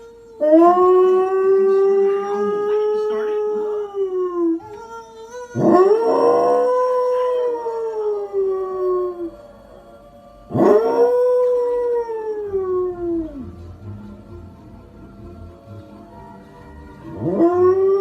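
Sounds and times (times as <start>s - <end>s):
dog howling: 0.0s - 9.5s, 10.5s - 13.6s, 17.1s - 18.0s.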